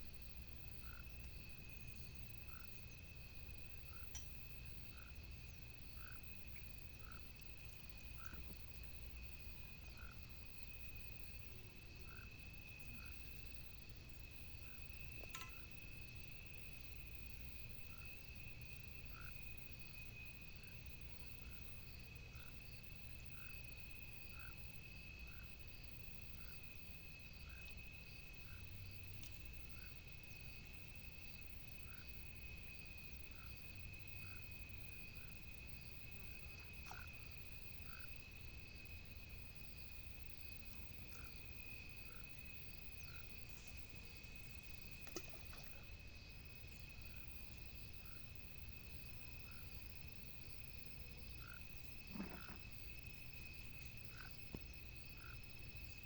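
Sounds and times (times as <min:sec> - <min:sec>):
high continuous frog chorus: 0:00.0 - 0:56.0
frog calls: 0:00.8 - 0:01.2, 0:02.4 - 0:02.9, 0:04.8 - 0:08.6, 0:09.7 - 0:10.3, 0:11.9 - 0:13.3, 0:19.0 - 0:19.5, 0:24.3 - 0:24.6, 0:31.8 - 0:32.2, 0:33.2 - 0:38.4, 0:40.2 - 0:56.0.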